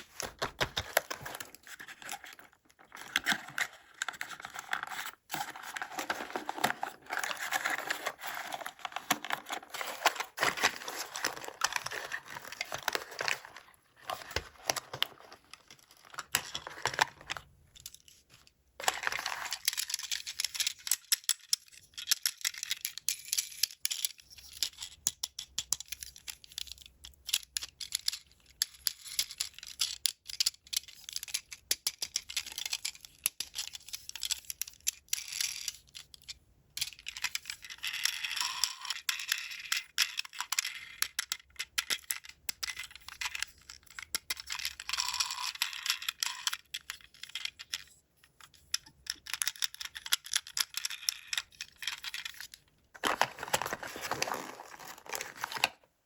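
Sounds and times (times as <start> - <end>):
packaging crinkling and tearing: 0.0 - 17.5, 53.0 - 55.9.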